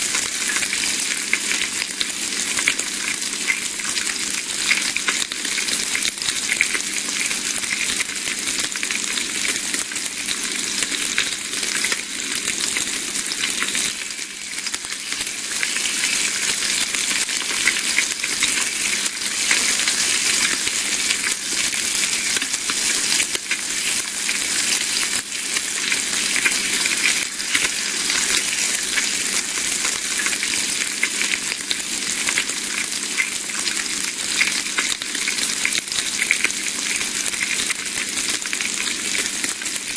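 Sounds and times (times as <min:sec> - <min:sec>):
bacon sizzling in a frying pan: 0:00.0 - 0:39.9.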